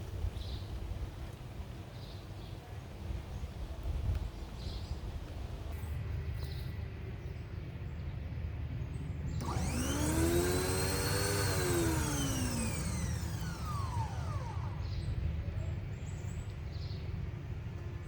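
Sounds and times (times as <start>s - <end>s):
motor whine: 9.4s - 15.4s.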